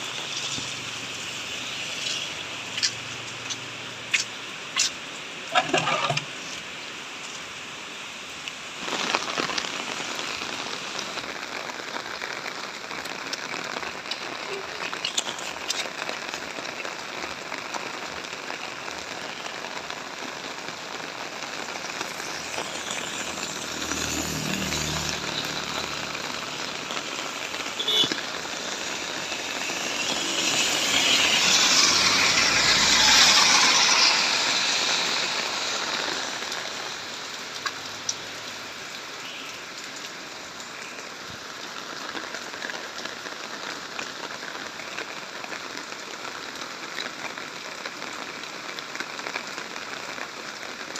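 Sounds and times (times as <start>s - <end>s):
steady rain falling: 0.0s - 50.9s
vehicle passing: 22.4s - 26.9s, 29.6s - 35.7s.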